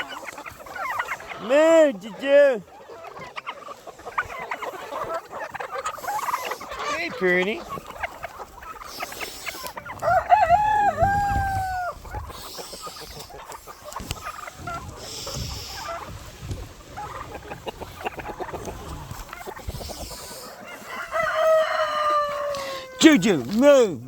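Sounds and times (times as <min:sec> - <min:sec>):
chickens clucking: 0:00.0 - 0:24.0
rooster crowing: 0:10.0 - 0:12.0, 0:20.6 - 0:23.0.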